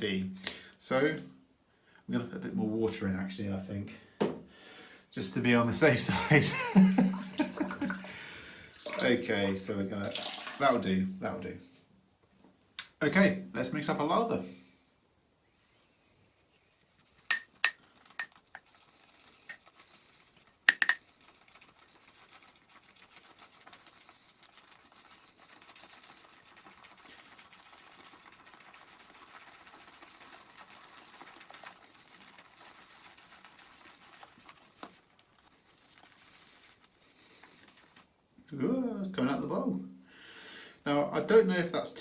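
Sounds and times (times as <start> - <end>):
shaving brush swishing lather: 5.6 - 8.4, 16.4 - 38.1.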